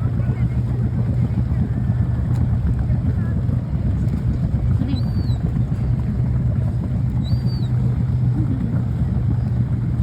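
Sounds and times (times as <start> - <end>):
low rumble: 0.0 - 10.0
water bird peeping: 4.7 - 5.7, 7.1 - 8.0.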